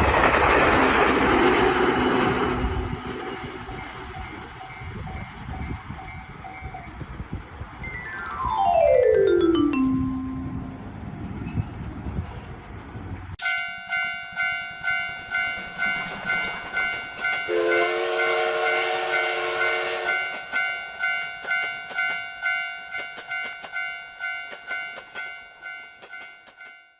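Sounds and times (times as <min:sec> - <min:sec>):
low train rumble: 0:00.0 - 0:07.8, 0:08.6 - 0:13.4
railroad crossing bell ringing: 0:03.3 - 0:07.0, 0:07.8 - 0:11.3, 0:13.4 - 0:26.9
train horn: 0:17.5 - 0:20.4.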